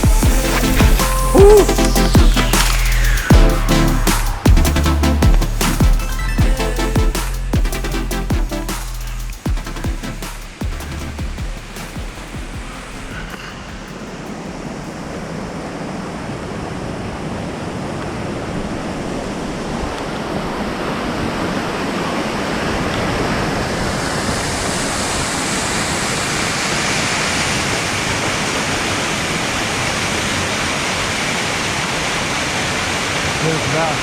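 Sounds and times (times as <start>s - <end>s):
waterfall rushing: 13.0s - 34.0s.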